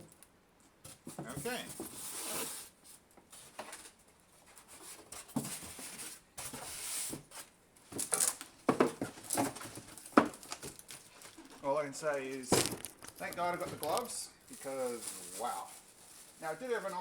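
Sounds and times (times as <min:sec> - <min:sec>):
packing material rustling: 0:07.9 - 0:17.0.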